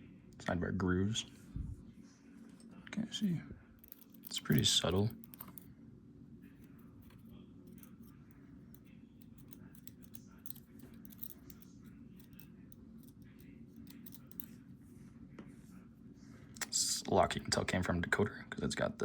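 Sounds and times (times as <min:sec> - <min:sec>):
low steady hum: 0:00.0 - 0:19.0
small metallic clicks of lock parts: 0:03.8 - 0:05.6, 0:07.0 - 0:14.5.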